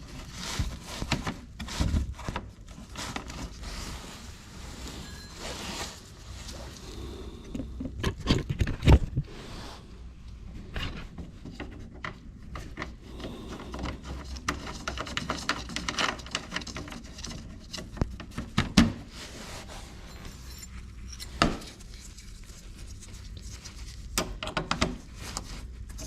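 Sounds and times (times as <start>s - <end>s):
plastic panels clicking and knocking: 24.2s - 25.0s.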